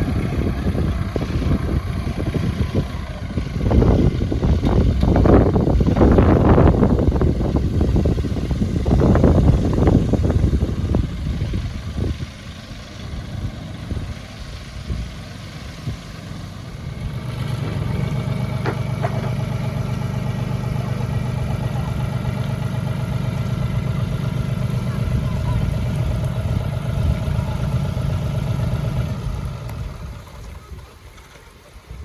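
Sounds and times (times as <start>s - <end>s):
motor engine idling: 0.0s - 32.0s
knocks and clatter: 17.5s - 19.6s.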